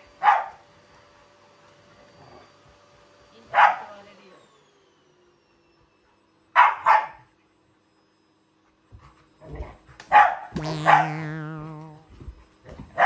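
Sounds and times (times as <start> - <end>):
dogs barking: 6.6 - 7.3, 10.1 - 11.1.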